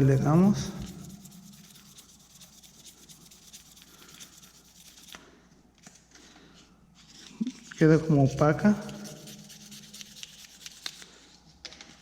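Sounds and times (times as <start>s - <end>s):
sandpaper scratching on plastic: 0.0s - 5.2s, 8.2s - 11.1s.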